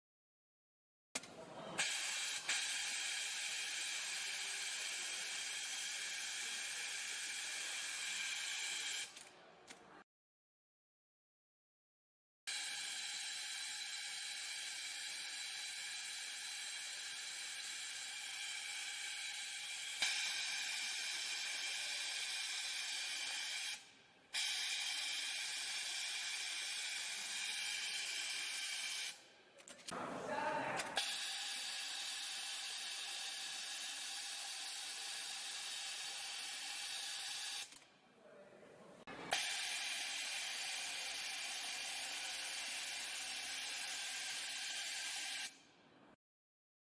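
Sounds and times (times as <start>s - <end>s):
sewing machine high whine: 1.8s - 9.1s, 12.5s - 29.2s, 31.0s - 37.8s, 39.3s - 45.6s.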